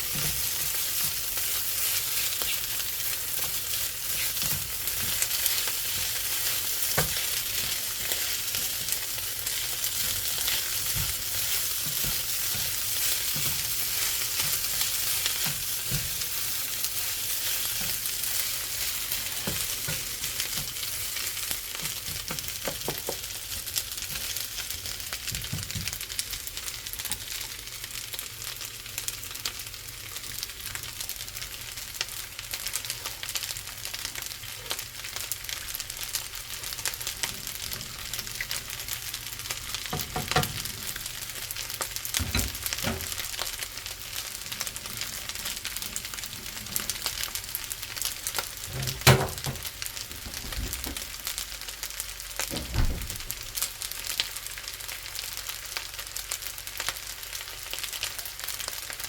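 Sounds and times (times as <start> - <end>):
stirring knocks and scrapes: 0.0 - 23.3
fried rice sizzling in pan: 0.0 - 59.0.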